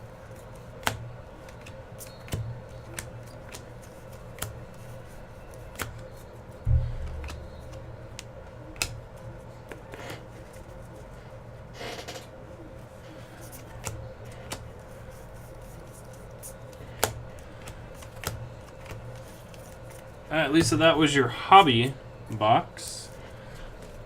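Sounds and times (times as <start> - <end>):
steady low hum: 0.0 - 24.0
cards being handled clicks: 0.3 - 6.4, 7.1 - 11.0, 13.4 - 20.2.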